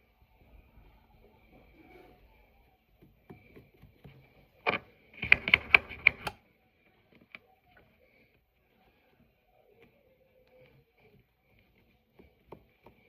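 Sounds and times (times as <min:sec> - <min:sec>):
sharp clicking taps: 0:05.2 - 0:06.4.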